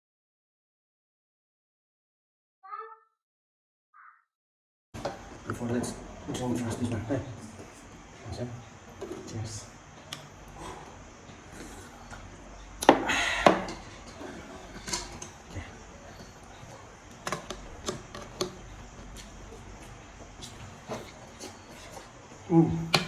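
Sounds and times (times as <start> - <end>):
cup and tableware clicking: 17.1 - 18.6.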